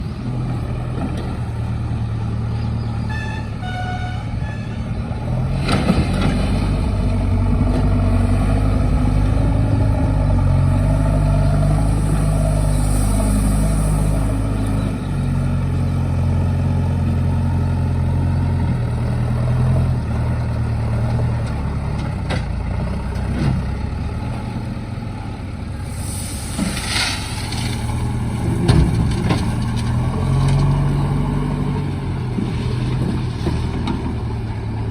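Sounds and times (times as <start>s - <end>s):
heavy diesel engine revving: 4.4s - 34.9s
brief hiss: 25.8s - 27.9s.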